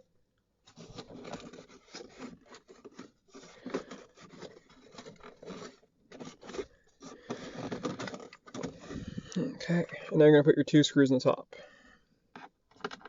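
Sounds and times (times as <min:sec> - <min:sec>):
plastic trim rubbing and scraping: 0:00.7 - 0:09.8, 0:12.3 - 0:13.0.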